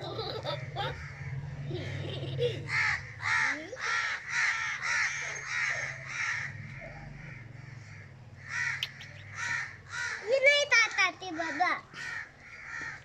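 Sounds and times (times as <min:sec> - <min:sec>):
crow cawing: 0:00.7 - 0:01.5, 0:02.7 - 0:10.6, 0:11.2 - 0:13.0.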